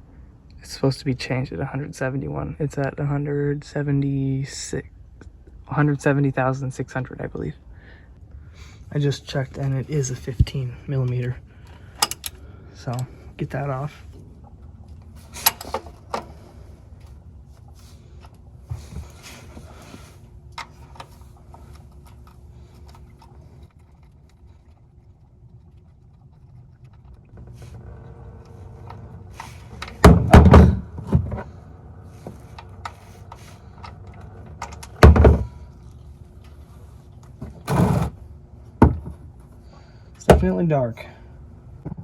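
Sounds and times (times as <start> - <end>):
low steady background noise: 0.0 - 42.0
loud thuds and knocks: 30.0 - 31.4.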